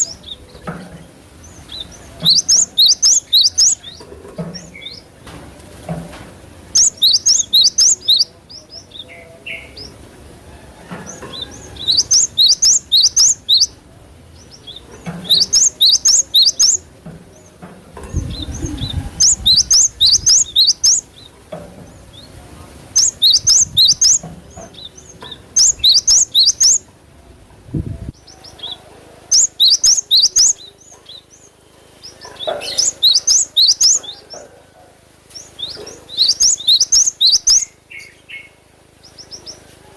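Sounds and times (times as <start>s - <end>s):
bird singing high chirping notes: 1.6s - 4.0s, 6.8s - 8.3s, 11.8s - 13.8s, 14.6s - 16.9s, 18.3s - 21.2s, 23.0s - 26.9s, 28.2s - 31.4s, 32.7s - 34.0s, 35.6s - 38.6s.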